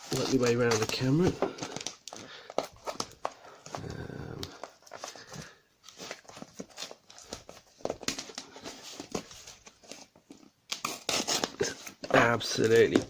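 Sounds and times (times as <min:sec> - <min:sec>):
packaging rustling and crinkling: 0:00.0 - 0:13.0.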